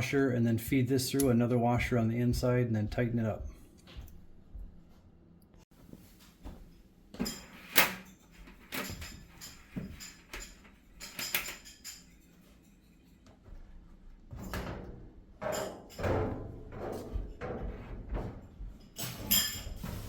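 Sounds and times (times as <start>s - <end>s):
metal hardware clicks and knocks: 7.2s - 12.3s.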